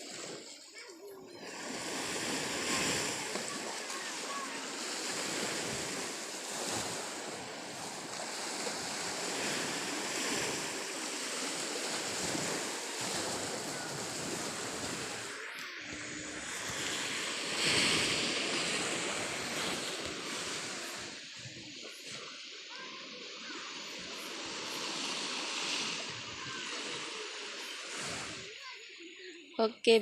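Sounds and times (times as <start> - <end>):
waves washing onto beach: 0.0 - 30.0.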